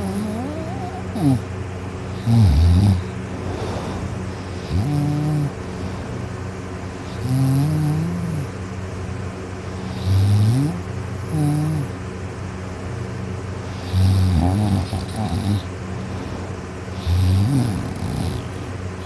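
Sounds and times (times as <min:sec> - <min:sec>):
person snoring loudly: 0:00.0 - 0:01.5, 0:02.2 - 0:05.6, 0:07.0 - 0:08.5, 0:09.8 - 0:12.0, 0:13.7 - 0:15.7, 0:17.0 - 0:18.7
steady low hum: 0:00.0 - 0:19.0.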